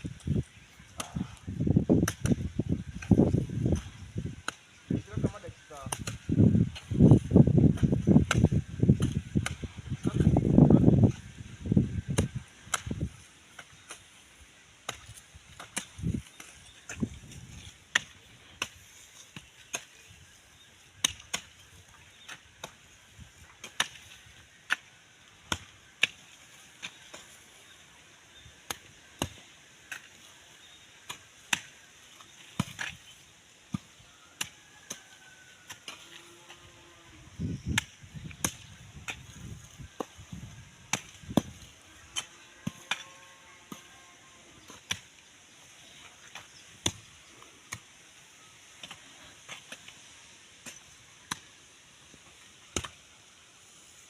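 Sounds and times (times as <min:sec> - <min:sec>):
hoe chopping into soil: 0:01.9 - 0:10.4, 0:14.8 - 0:20.1, 0:23.5 - 0:27.4, 0:28.3 - 0:33.1, 0:37.5 - 0:43.9, 0:44.6 - 0:45.2, 0:45.8 - 0:48.0.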